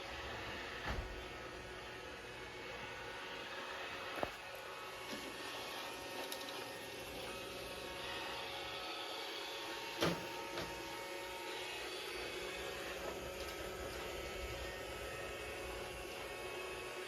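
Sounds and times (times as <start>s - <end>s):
robot vacuum whirring: 0.0s - 17.0s.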